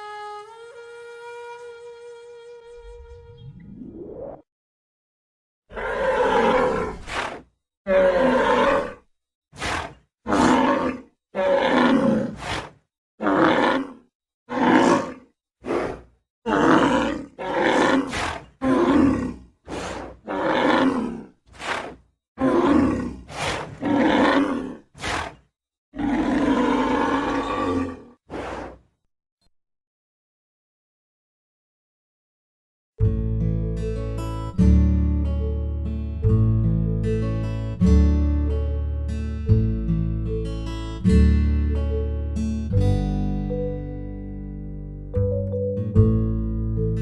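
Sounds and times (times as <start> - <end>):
bull bellowing: 5.7 - 9.0, 9.6 - 25.4, 26.0 - 28.8.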